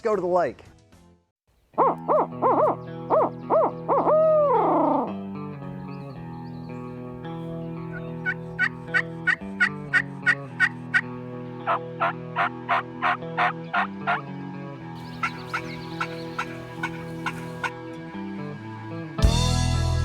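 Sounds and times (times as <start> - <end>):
background music: 0.0 - 20.0
turkey calls: 1.8 - 5.1, 7.8 - 14.2, 15.0 - 17.9.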